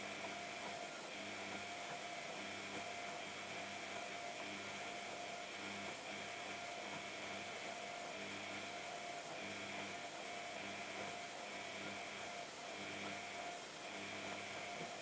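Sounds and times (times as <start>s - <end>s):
washing machine hum and whine: 0.0s - 15.0s.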